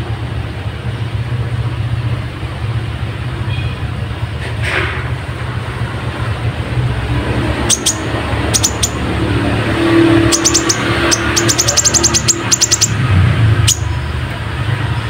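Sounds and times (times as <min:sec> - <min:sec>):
sunbird chirping: 0:07.5 - 0:14.2.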